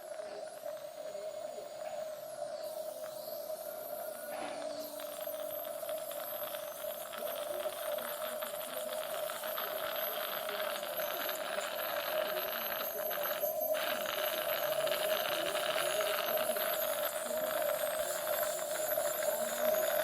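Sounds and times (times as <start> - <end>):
steady hum: 0.0 - 20.0
dental equipment hissing: 0.1 - 20.0.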